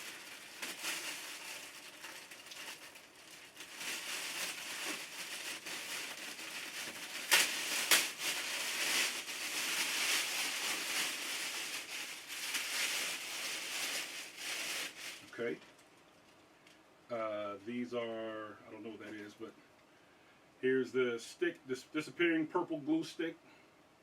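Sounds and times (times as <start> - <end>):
packing material crinkling: 0.0 - 16.4.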